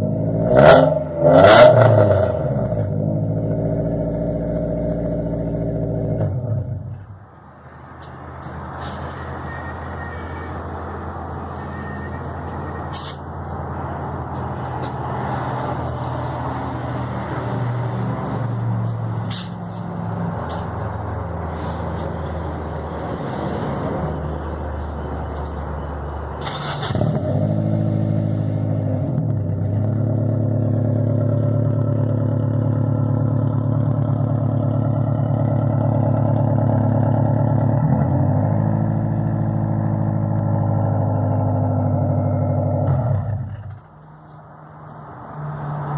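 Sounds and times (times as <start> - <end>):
car engine exhaust note: 0.0 - 7.0.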